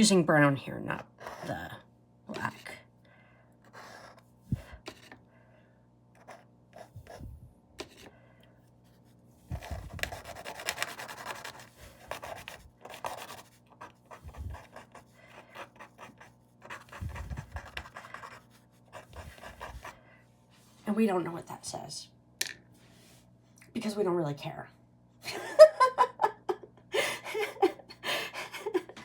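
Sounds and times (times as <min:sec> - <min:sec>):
paintbrush scratching on surface: 0:09.0 - 0:19.9.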